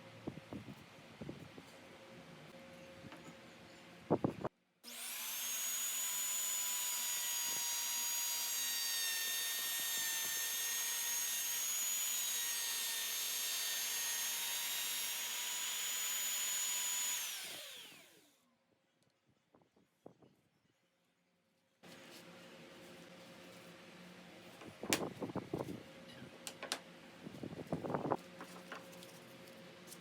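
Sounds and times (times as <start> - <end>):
power tool motor whining: 4.9 - 18.3.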